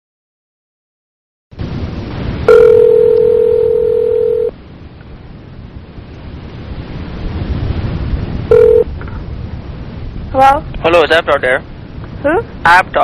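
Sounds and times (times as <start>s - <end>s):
telephone ringback tone: 2.5s - 4.5s, 8.5s - 8.9s.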